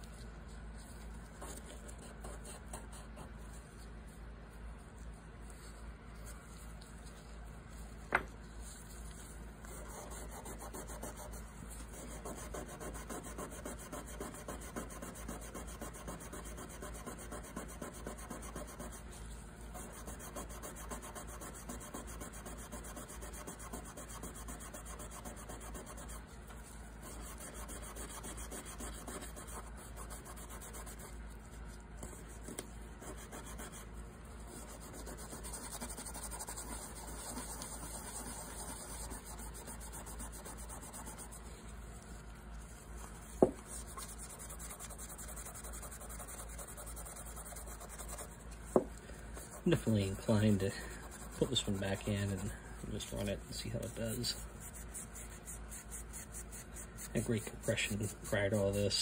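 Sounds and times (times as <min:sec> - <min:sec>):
scrub pad rubbing metal: 0:49.6 - 0:59.0.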